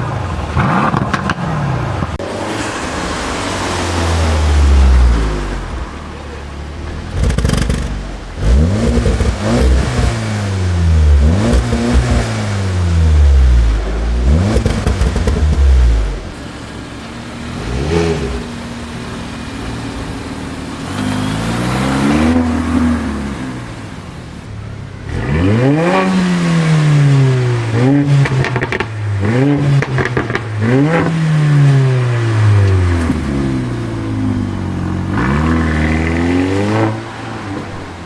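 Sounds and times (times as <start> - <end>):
car engine revving: 0.0 - 38.0.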